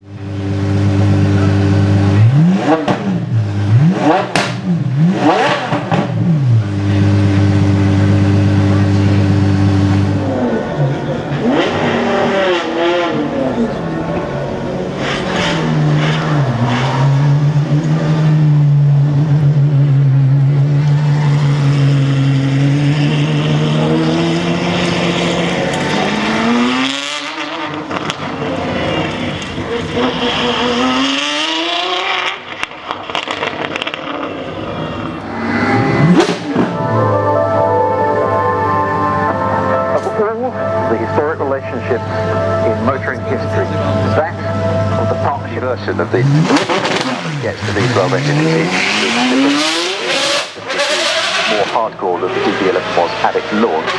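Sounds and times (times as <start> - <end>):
car engine idling and revving: 0.0 - 53.9.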